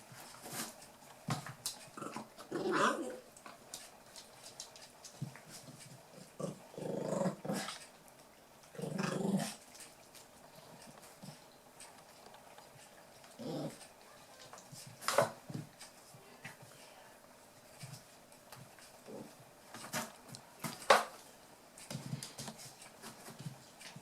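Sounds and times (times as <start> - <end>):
puppies growling in play: 1.7 - 16.7, 18.8 - 20.4.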